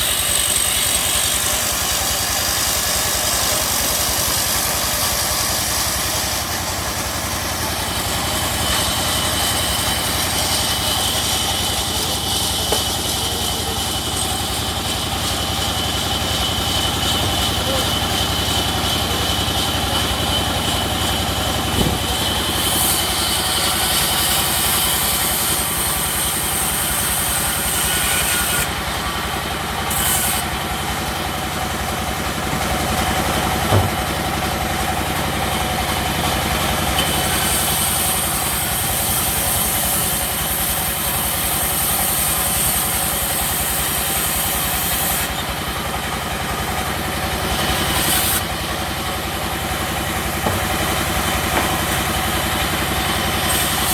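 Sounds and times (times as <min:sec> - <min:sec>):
sawmill machinery drone: 0:00.0 - 0:53.9
sharp knock: 0:33.7 - 0:34.0.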